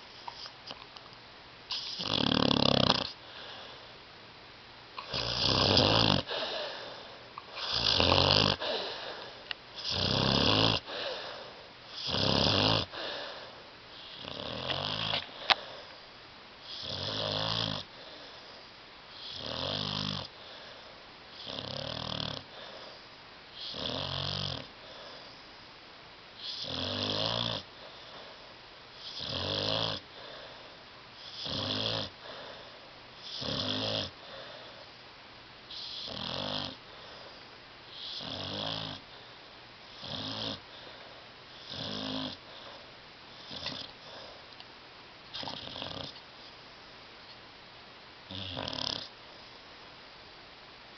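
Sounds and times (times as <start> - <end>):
dog snoring: 1.7 - 3.8, 5.0 - 16.0, 16.6 - 23.0, 23.6 - 25.4, 26.4 - 34.8, 35.7 - 39.3, 39.9 - 44.4, 45.3 - 46.2, 48.3 - 49.1.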